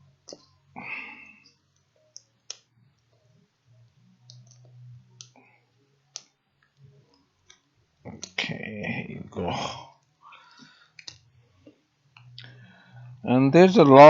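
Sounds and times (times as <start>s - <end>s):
faint low hum: 0.0s - 14.0s
small sharp clicks: 6.1s - 8.4s.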